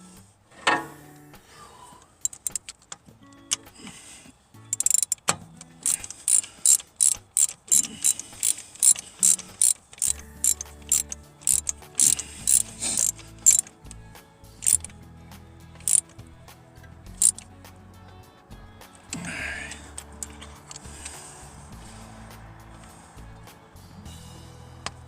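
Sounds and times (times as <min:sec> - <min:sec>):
ratchet wrench clicking: 0:02.2 - 0:03.7, 0:04.7 - 0:14.0, 0:14.6 - 0:14.9, 0:15.8 - 0:16.2, 0:17.2 - 0:17.4, 0:19.0 - 0:21.2.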